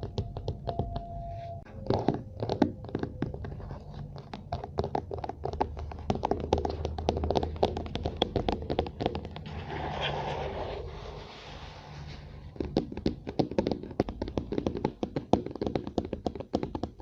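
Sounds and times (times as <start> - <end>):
tapping clicking and scratching: 1.7 - 10.4.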